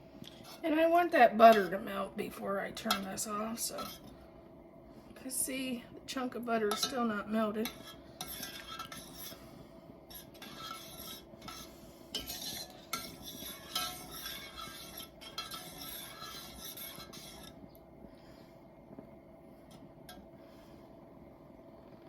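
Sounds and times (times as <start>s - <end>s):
faint steady hum: 0.0s - 22.0s
spoon stirring and scraping pot: 0.2s - 4.3s, 6.4s - 17.8s.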